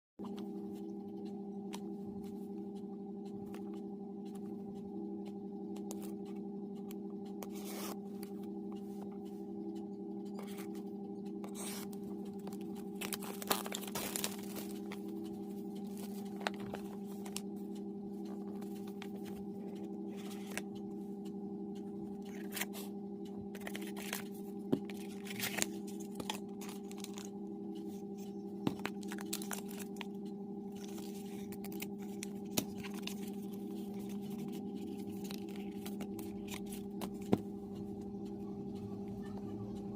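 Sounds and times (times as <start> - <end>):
steady low hum: 0.2 - 39.9
packaging rustling and tearing: 13.0 - 14.9, 28.8 - 30.1.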